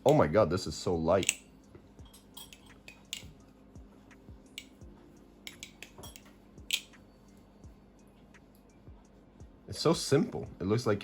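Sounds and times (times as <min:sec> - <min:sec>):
metallic clicks of knife handles: 0:01.2 - 0:01.5, 0:02.1 - 0:03.4.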